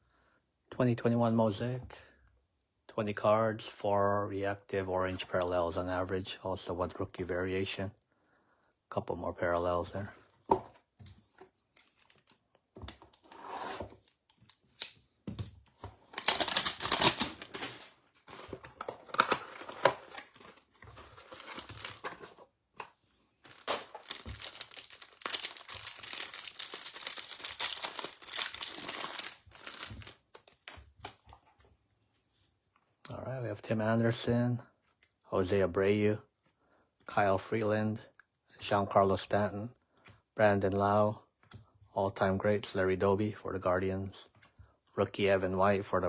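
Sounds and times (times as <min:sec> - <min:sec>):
packaging tearing: 0:16.0 - 0:22.4, 0:23.4 - 0:30.8
packaging crinkling: 0:16.0 - 0:31.2.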